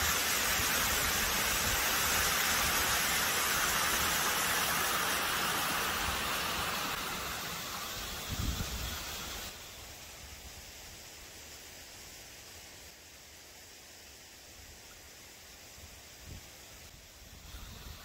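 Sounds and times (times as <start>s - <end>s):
water pouring down spillway: 0.0s - 9.6s.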